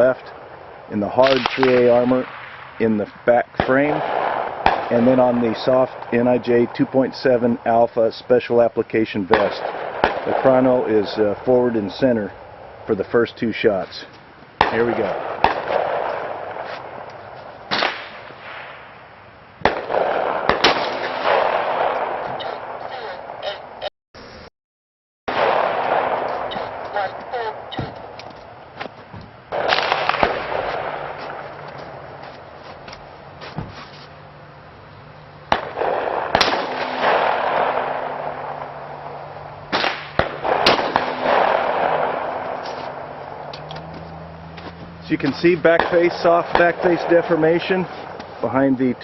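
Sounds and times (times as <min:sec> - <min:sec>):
pistol shots with echo: 0:00.0 - 0:07.8, 0:09.2 - 0:12.1, 0:14.6 - 0:17.1, 0:17.7 - 0:18.9, 0:19.6 - 0:23.4, 0:25.3 - 0:27.7, 0:29.5 - 0:31.4, 0:35.5 - 0:43.5, 0:45.4 - 0:49.0
handgun shots with echo: 0:01.2 - 0:02.6, 0:17.7 - 0:18.8, 0:35.5 - 0:38.8, 0:39.7 - 0:43.0, 0:45.7 - 0:47.5.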